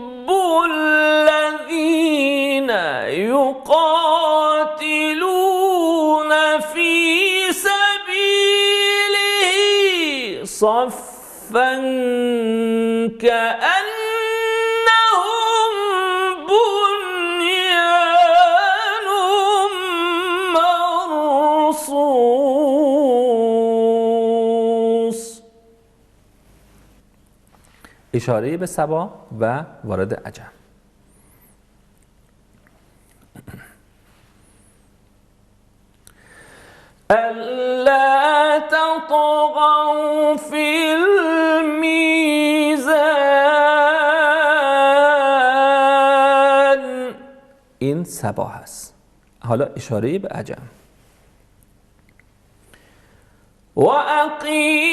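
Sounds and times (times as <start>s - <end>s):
person reciting melismatically: 0.0s - 25.8s, 28.1s - 30.7s, 37.1s - 50.8s, 53.7s - 54.9s.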